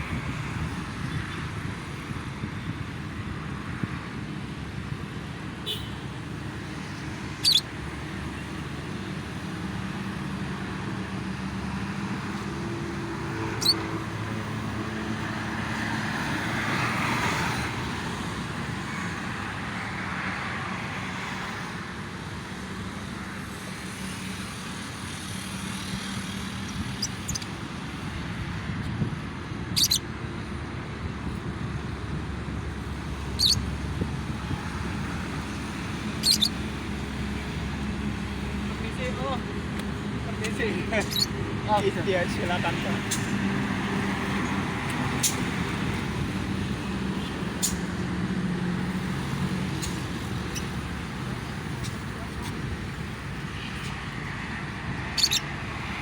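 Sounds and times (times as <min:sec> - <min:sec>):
road traffic noise: 0:00.0 - 0:56.0
short high bird chirps: 0:07.4 - 0:07.7, 0:13.6 - 0:13.8, 0:29.8 - 0:30.0, 0:33.4 - 0:33.6, 0:36.2 - 0:36.6, 0:41.0 - 0:41.3, 0:55.2 - 0:55.5.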